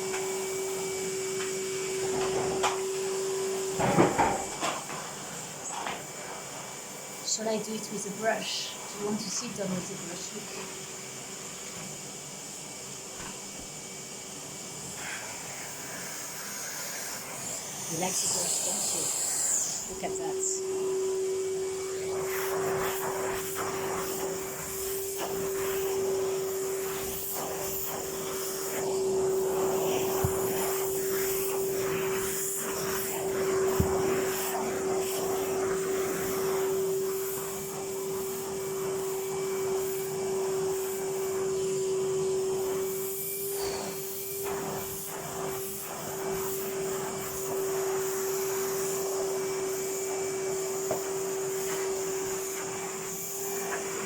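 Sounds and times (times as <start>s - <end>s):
vacuum cleaner humming: 0.0s - 54.0s
brush rubbing over carpet: 14.9s - 54.0s.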